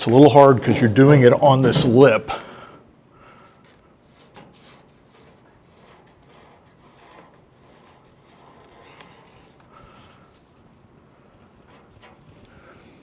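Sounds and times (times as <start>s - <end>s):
marker scratching on paper: 4.1s - 9.6s.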